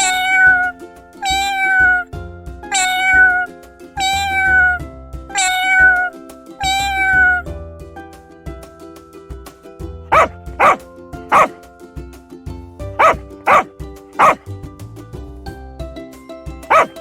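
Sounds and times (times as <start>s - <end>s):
dog barking: 0.0s - 2.0s, 2.7s - 4.8s, 5.4s - 7.4s, 10.1s - 11.6s, 13.0s - 14.4s, 16.7s - 17.0s.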